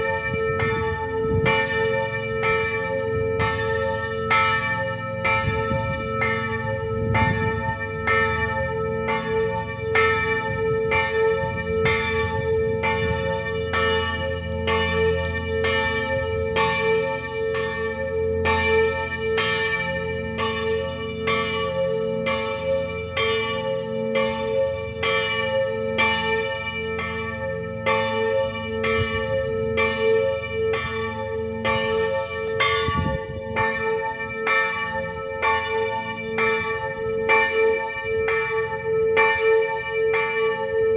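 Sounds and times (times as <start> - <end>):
church bells ringing: 0.0 - 40.9.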